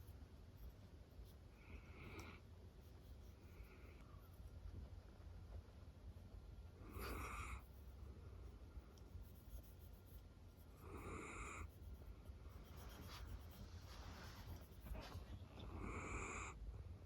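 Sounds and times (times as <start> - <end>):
dog snoring: 15.6 - 16.6.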